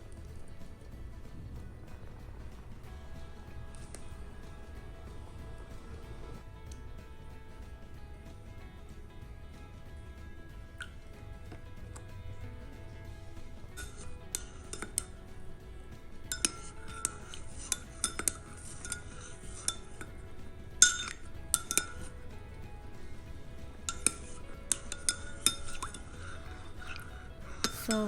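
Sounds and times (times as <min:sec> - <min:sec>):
soft background music: 0:00.0 - 0:28.0
spoon clinking against cups: 0:13.6 - 0:15.6, 0:16.2 - 0:22.2, 0:22.9 - 0:28.0.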